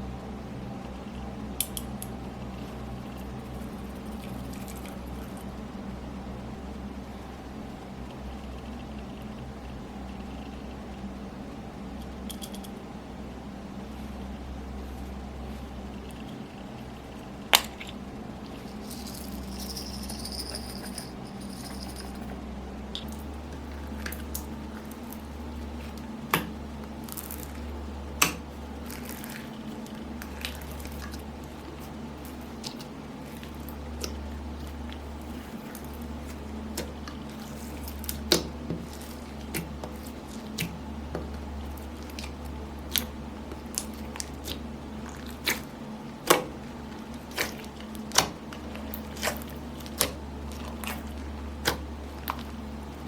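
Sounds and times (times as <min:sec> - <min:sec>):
steady low hum: 0:00.0 - 0:53.0
wet squishing of slime: 0:22.9 - 0:53.0.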